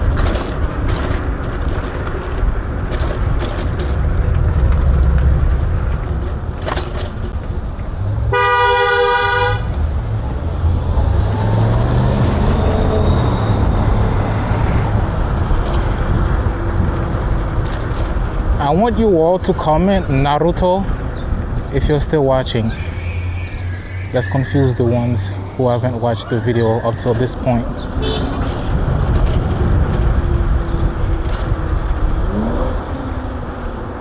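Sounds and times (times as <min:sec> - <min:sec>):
wind and riding rumble: 0:00.0 - 0:34.0
scooter horn toot: 0:08.3 - 0:09.7, 0:28.0 - 0:28.4.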